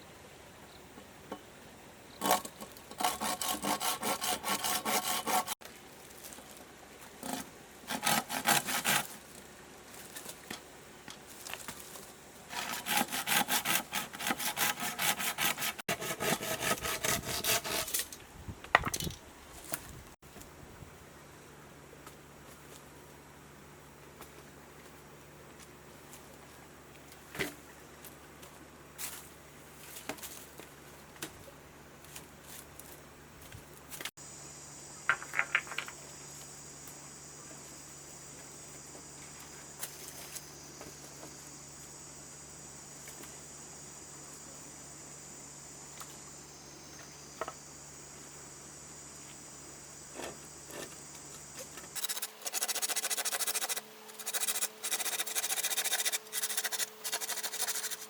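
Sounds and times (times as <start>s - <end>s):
rough scraping strokes: 2.2s - 5.6s, 12.5s - 18.2s, 52.0s - 58.0s
insects buzzing drone: 34.1s - 58.0s.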